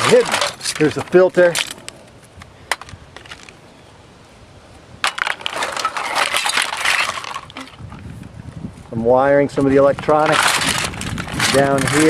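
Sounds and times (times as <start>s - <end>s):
debris crunching and rattling: 0.0s - 1.9s, 5.0s - 8.1s, 9.6s - 12.0s.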